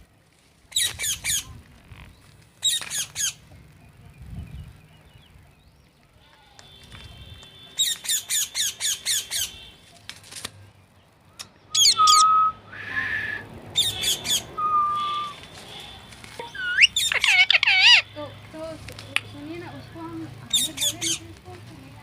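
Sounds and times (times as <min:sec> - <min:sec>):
parrot squawking: 0:07.8 - 0:09.6, 0:11.7 - 0:12.5, 0:13.8 - 0:15.3, 0:16.4 - 0:18.2, 0:20.5 - 0:21.2
parrot whistles: 0:11.7 - 0:15.4.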